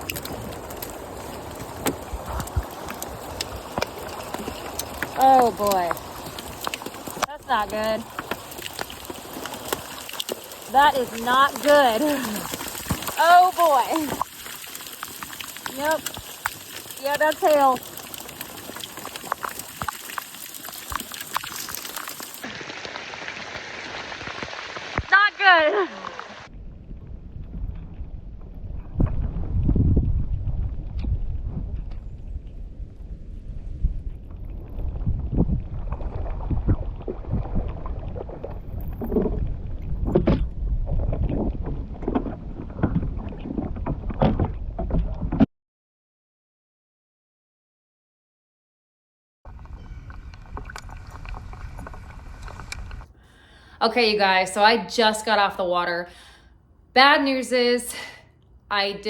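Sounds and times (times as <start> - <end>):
hailstones ticking: 0.0 - 26.4
rain hissing: 0.0 - 26.5
wind buffeting microphone: 26.5 - 45.3, 49.5 - 53.2.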